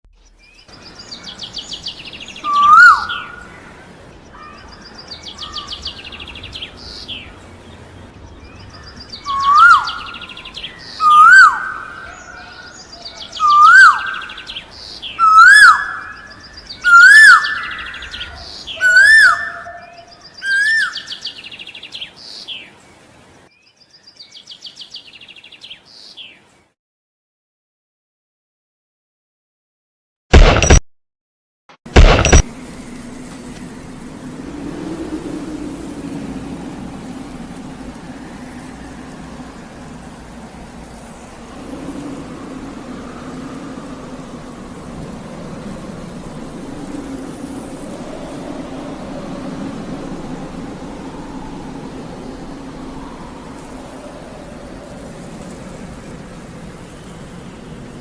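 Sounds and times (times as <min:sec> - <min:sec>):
songbird trilling and whistling: 0:00.2 - 0:03.5, 0:08.4 - 0:22.7
faint outdoor hiss: 0:00.2 - 0:26.8, 0:31.9 - 0:58.0.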